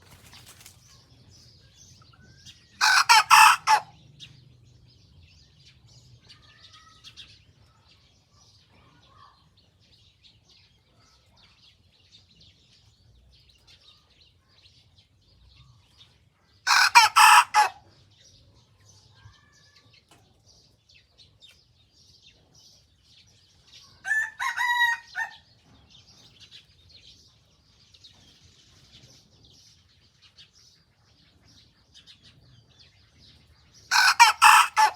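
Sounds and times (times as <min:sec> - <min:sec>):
small birds chirping: 0:00.0 - 0:34.9
young rooster crowing: 0:02.8 - 0:03.9, 0:16.7 - 0:17.8, 0:24.0 - 0:25.4, 0:33.9 - 0:34.9.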